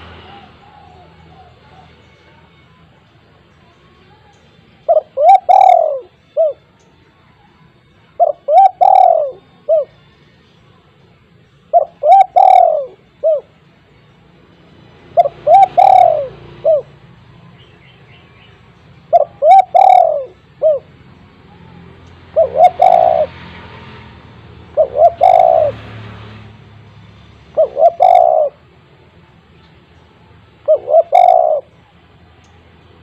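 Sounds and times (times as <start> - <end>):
dove cooing: 0.0 - 2.1, 4.9 - 6.6, 8.2 - 9.9, 11.7 - 13.6, 15.0 - 17.0, 19.1 - 23.7, 24.6 - 26.0, 27.4 - 28.7, 30.6 - 31.8.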